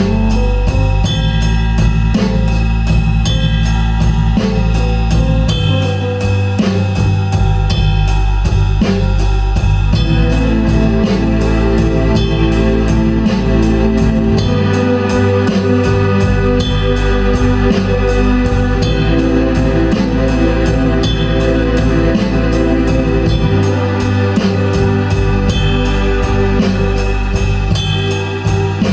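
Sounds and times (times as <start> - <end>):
drum kit beat: 0.0 - 28.9
organ chords: 10.0 - 28.9.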